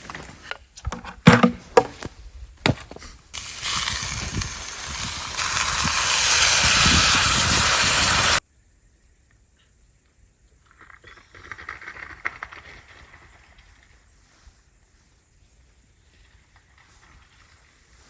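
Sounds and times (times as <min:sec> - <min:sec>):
knocks and clatters: 0:00.0 - 0:03.0
food sizzling in a pan: 0:03.4 - 0:08.4.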